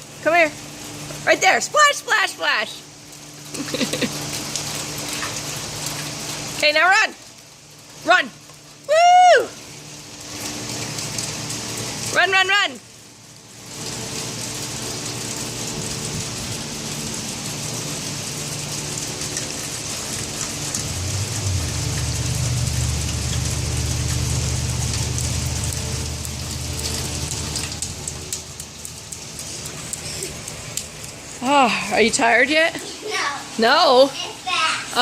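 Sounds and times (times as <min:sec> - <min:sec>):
rain falling: 0:00.0 - 0:35.0
low hum: 0:18.9 - 0:30.9.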